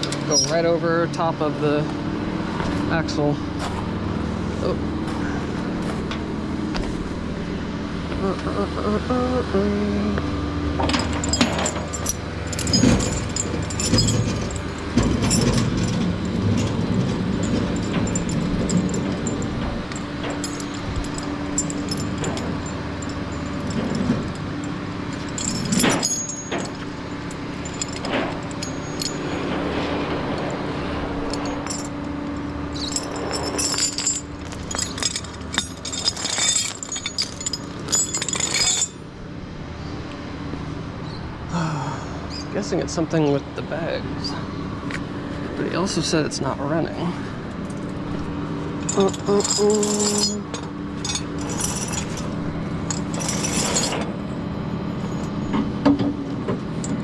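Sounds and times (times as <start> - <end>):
metal chains clinking and rattling: 0.0 - 1.2, 10.8 - 39.1, 47.5 - 55.6
truck engine running: 0.0 - 57.0.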